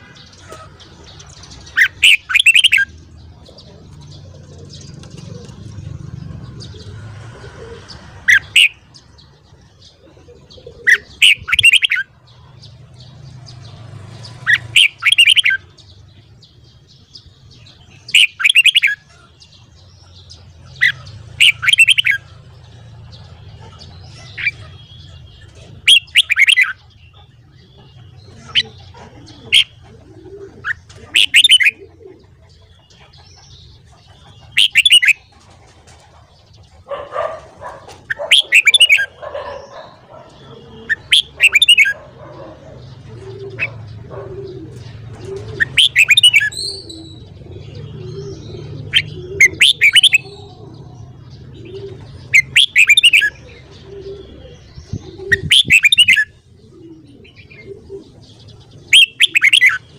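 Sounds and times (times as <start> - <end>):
bird singing warbled song: 0.0 - 59.9
softer lower bird calls: 44.8 - 59.9.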